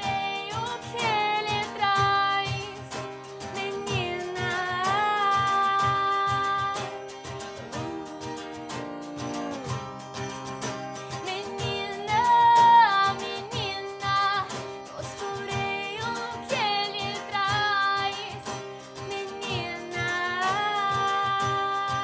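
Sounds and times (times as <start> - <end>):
woman singing: 0.0 - 10.0, 11.1 - 22.0
instrumental accompaniment: 0.0 - 22.0.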